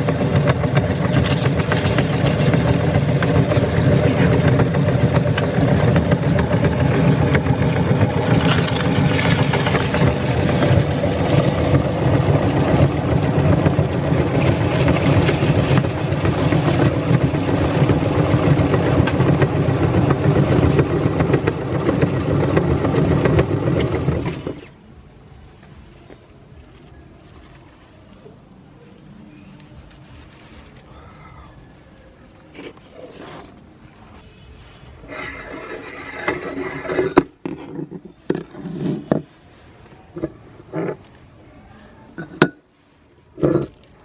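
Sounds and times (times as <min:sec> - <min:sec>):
electric meat grinder motor hum: 0:00.0 - 0:24.7
crisp chips crackling: 0:08.3 - 0:12.5.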